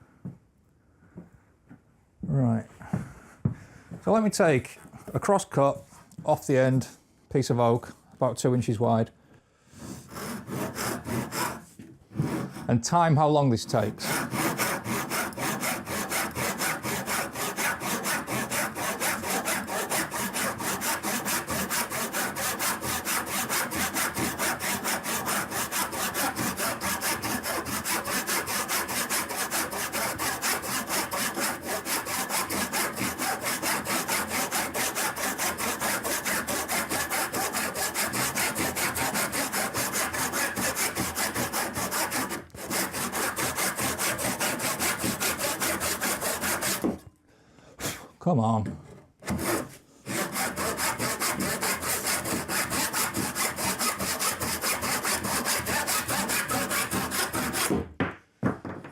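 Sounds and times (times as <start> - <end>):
hand saw cutting wood: 9.8 - 47.0, 49.2 - 57.8.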